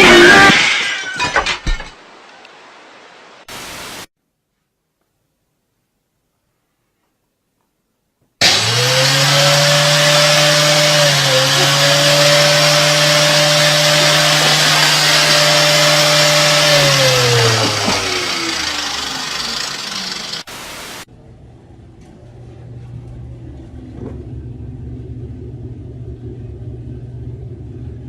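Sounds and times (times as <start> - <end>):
loud hiss: 3.5 - 4.1, 19.3 - 21.1
electric motor whirring: 8.4 - 20.5.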